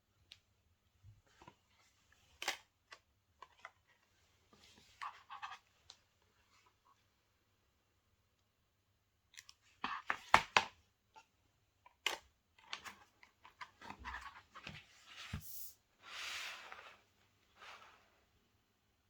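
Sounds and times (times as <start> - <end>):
package sliding and brushing: 15.0 - 18.1.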